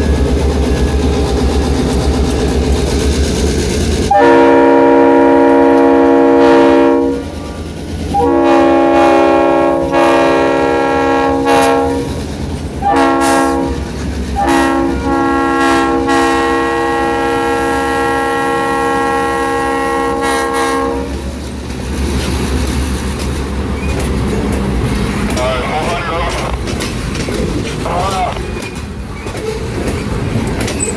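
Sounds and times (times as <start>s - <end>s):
train rumble and wheel clatter: 0.0s - 30.9s
locomotive air horn: 4.1s - 7.4s, 8.1s - 12.2s, 12.8s - 21.2s.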